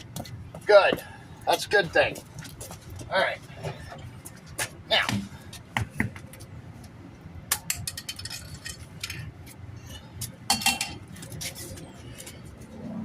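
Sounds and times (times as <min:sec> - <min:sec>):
metallic clinks and knocks: 0:07.5 - 0:09.3, 0:10.5 - 0:11.4.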